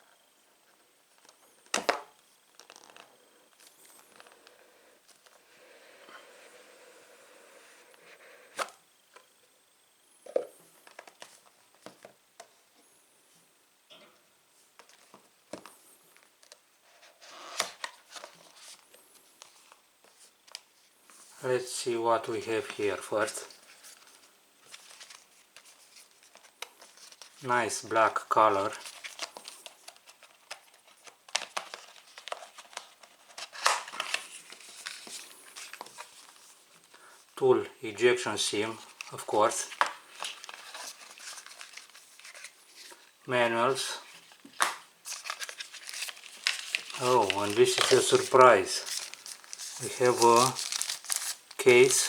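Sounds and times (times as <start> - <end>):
packaging rustling: 28.6 - 37.0, 38.7 - 43.2, 44.0 - 52.0.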